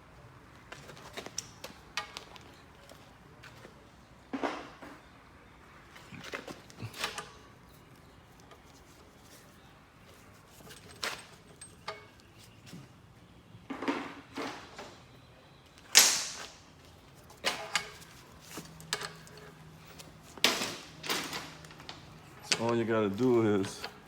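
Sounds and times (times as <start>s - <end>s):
metallic clicks and knocks: 17.4s - 22.8s.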